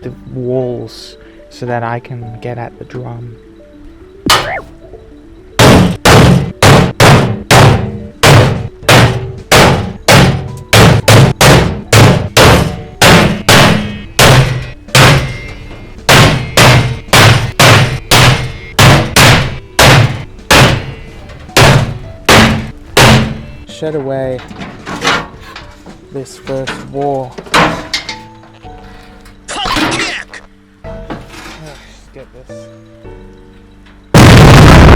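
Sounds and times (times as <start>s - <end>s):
hammer blows on sheet metal: 5.6s - 23.7s.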